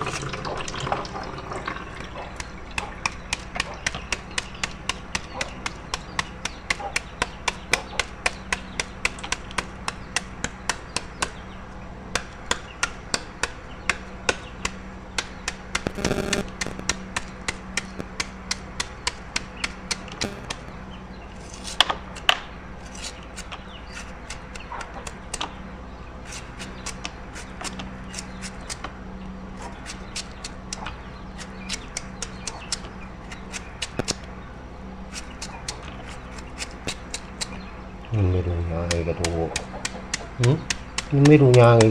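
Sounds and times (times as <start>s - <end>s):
low steady hum: 0.0s - 41.9s
knife chopping on cutting board: 2.3s - 11.3s, 38.8s - 41.9s.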